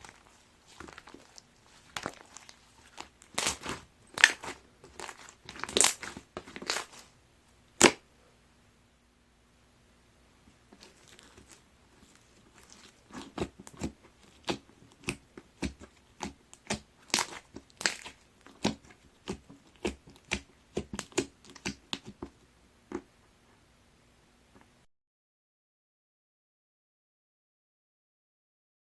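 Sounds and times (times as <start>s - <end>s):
slime squishing with wet clicks: 0.0s - 7.0s, 10.8s - 22.3s.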